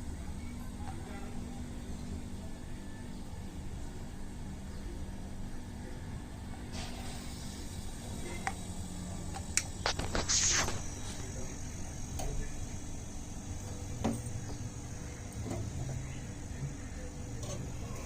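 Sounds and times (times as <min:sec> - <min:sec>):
refrigerator compressor humming: 0:00.0 - 0:18.0
short hiss: 0:09.8 - 0:11.5.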